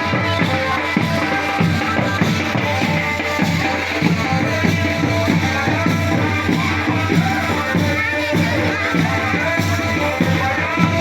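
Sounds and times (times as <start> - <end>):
music with drum beat and melody: 0.0 - 11.0.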